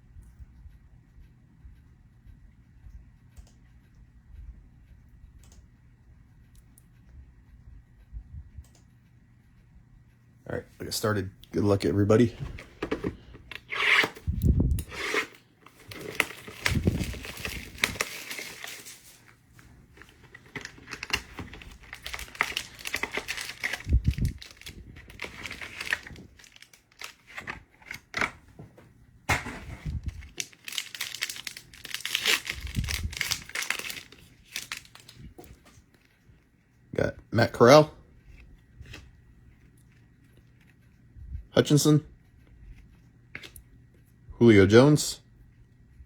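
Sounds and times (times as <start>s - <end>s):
foil wrappers tearing and crinkling: 14.9s - 19.3s, 19.9s - 28.2s, 29.4s - 35.3s.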